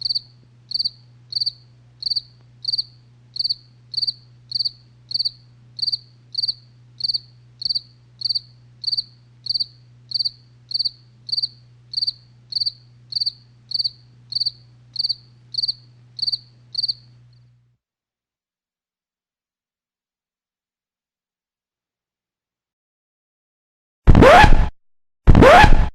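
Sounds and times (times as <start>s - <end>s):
cricket chirping: 0.0s - 17.2s
steady low hum: 0.0s - 17.8s.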